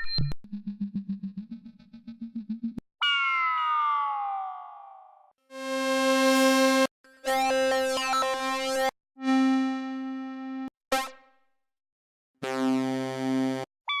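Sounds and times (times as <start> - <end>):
buzzy synthesizer tones: 0.4 - 2.8.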